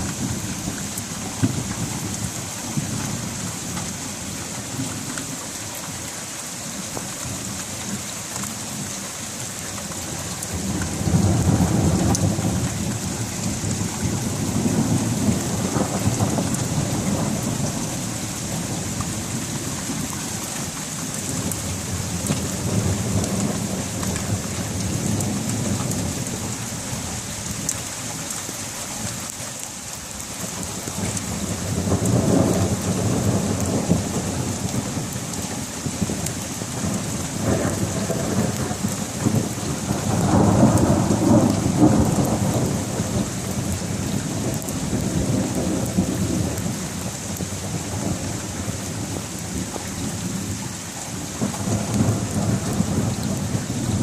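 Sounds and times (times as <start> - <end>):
steady rain falling: 0.0 - 54.0
thunder rumbling: 10.2 - 20.1, 31.0 - 50.6, 51.2 - 54.0.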